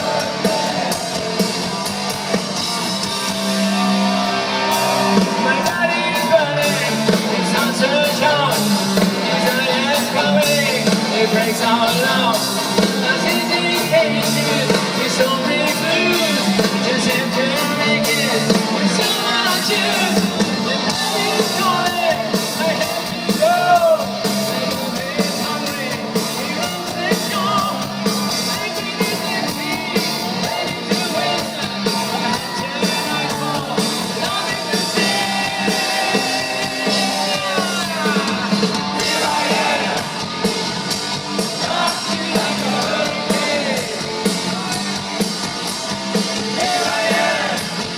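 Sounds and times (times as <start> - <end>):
rock band playing: 0.0 - 47.9
person singing and shouting: 3.6 - 40.2.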